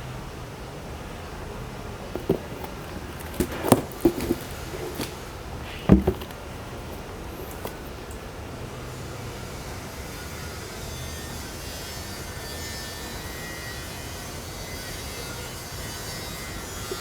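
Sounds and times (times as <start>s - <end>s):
knocks and taps handling a box: 2.1s - 8.0s.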